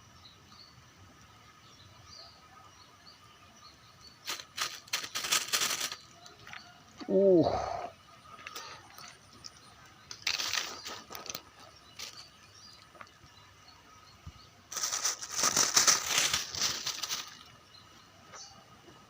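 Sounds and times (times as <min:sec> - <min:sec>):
crinkly rustling handling noise: 0:04.2 - 0:06.8, 0:08.4 - 0:13.2, 0:14.7 - 0:17.6.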